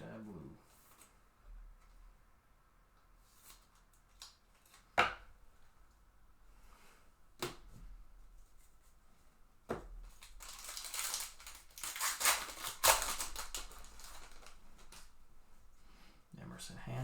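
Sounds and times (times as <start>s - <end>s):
foil wrapper crinkling: 10.0s - 15.1s.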